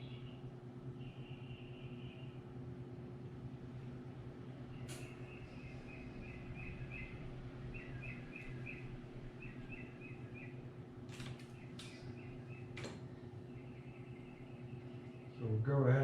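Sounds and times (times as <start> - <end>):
low steady hum: 0.0 - 16.0
small bird chirping: 4.8 - 10.7, 11.4 - 12.8.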